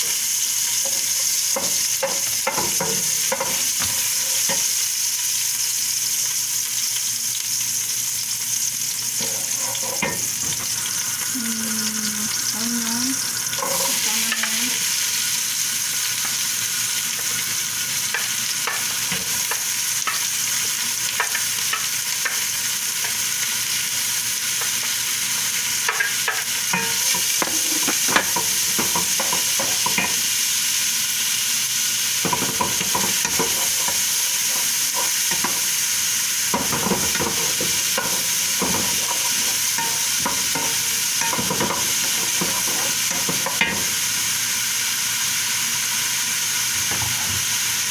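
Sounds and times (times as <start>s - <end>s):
garlic and onion sizzling in oil: 0.0s - 47.9s
utensil scraping the pan: 32.2s - 43.8s.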